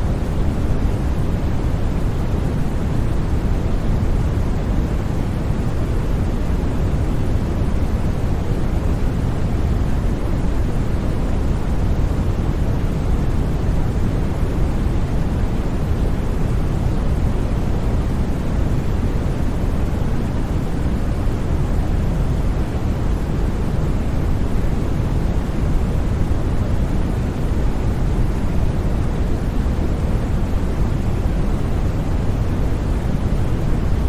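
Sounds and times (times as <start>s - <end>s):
white noise hiss: 0.0s - 34.0s.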